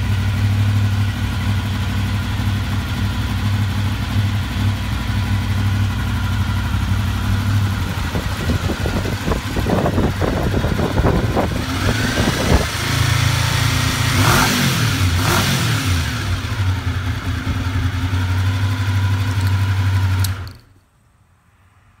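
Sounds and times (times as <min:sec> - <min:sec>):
motor humming and revving: 0:08.4 - 0:16.6.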